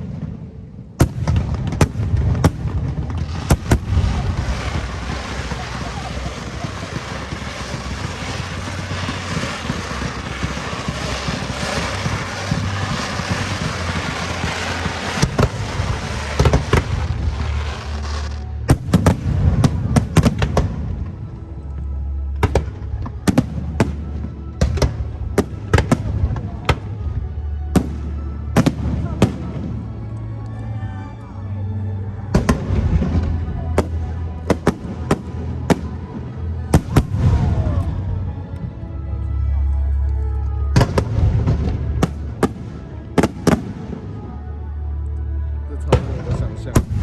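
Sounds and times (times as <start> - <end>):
fireworks hissing: 1.0 - 21.0.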